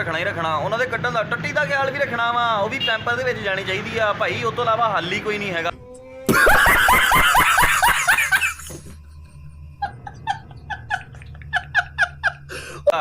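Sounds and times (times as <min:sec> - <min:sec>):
person laughing: 0:06.3 - 0:09.0, 0:09.8 - 0:13.0.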